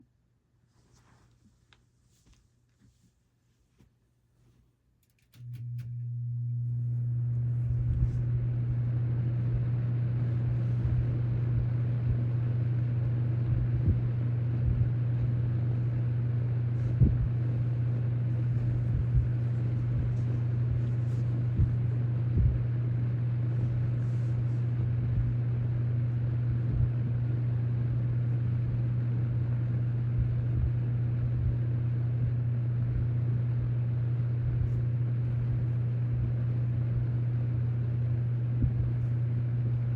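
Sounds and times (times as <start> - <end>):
fan motor hum: 3.7 - 39.9
rush of air from fan: 13.4 - 28.4.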